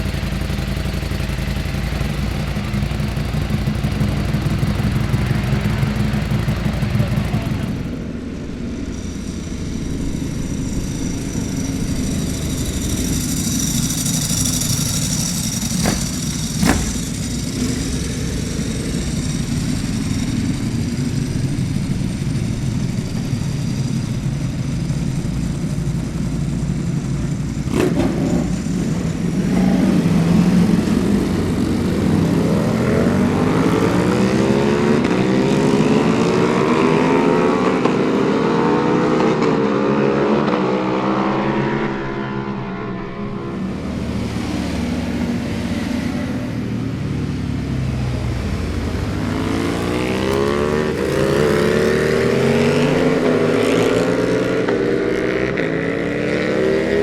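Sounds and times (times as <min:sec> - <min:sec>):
motorcycle accelerating: 0:00.0 - 0:57.0
motorcycle engines droning: 0:00.0 - 0:57.0
sharp engine cracks: 0:12.7 - 0:18.2, 0:49.2 - 0:52.5.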